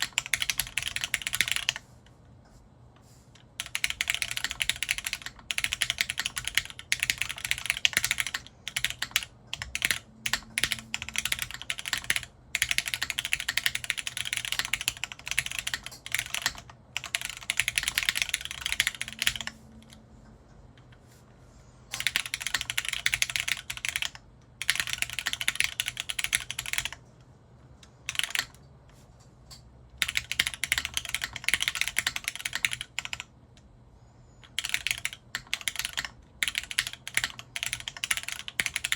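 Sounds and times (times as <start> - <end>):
mechanical keyboard typing: 0.0 - 1.8, 3.5 - 20.0, 21.9 - 27.0, 28.0 - 28.7, 29.5 - 33.3, 34.4 - 38.9.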